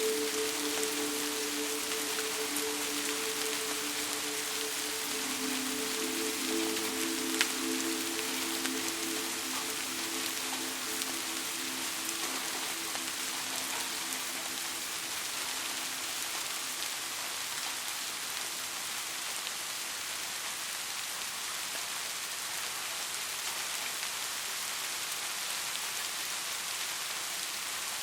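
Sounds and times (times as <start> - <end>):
steady rain falling: 0.0 - 28.0.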